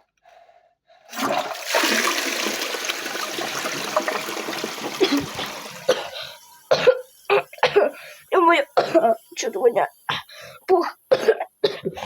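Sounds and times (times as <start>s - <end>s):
toilet flushing: 1.1s - 7.5s.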